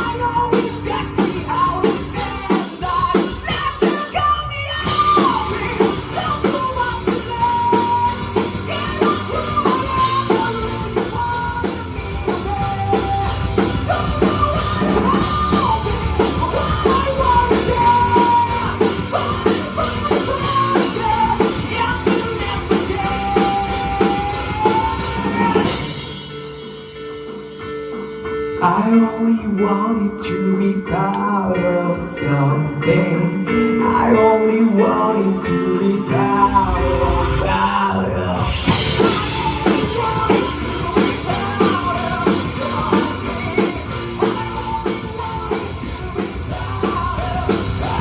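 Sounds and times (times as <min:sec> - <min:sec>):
instrumental rock music: 0:00.0 - 0:48.0
high sliding melodic line: 0:38.4 - 0:48.0.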